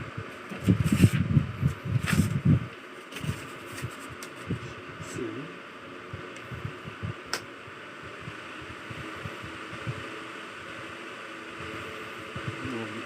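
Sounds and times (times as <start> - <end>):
box fan blowing air: 0.0 - 13.0
sharp click: 7.3 - 7.5.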